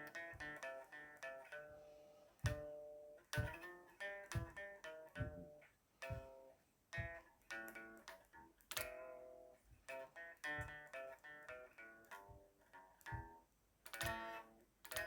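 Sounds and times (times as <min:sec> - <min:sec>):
guitar strummed chords: 0:02.5 - 0:09.4.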